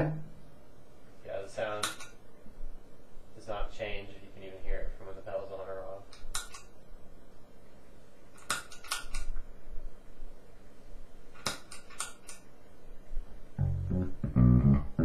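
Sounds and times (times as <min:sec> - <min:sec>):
amplifier hum and hiss: 0:00.0 - 0:15.0
pedal footswitch clicks: 0:06.1 - 0:06.7.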